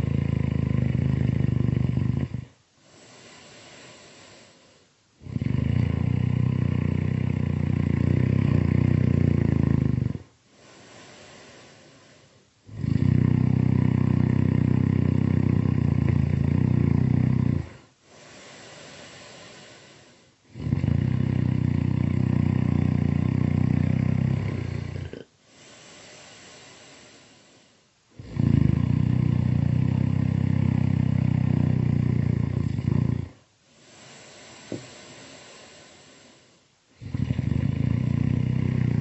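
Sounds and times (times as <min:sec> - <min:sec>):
loud rattling snoring: 0:00.0 - 0:02.5, 0:05.2 - 0:10.3, 0:12.7 - 0:17.8, 0:20.5 - 0:27.1, 0:28.2 - 0:36.4, 0:37.0 - 0:39.0
quiet breathing: 0:00.0 - 0:39.0.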